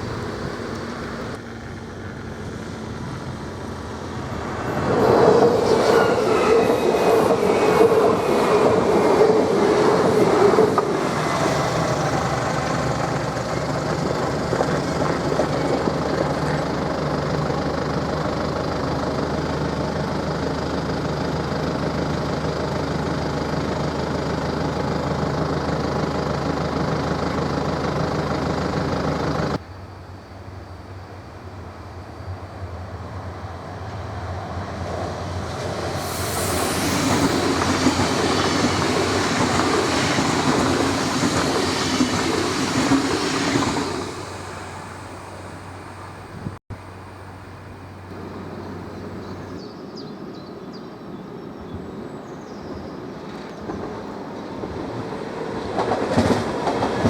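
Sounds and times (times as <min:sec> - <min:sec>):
electric train hum: 0:00.0 - 0:57.0
train passing by: 0:00.0 - 0:57.0
high hiss: 0:35.4 - 0:49.8.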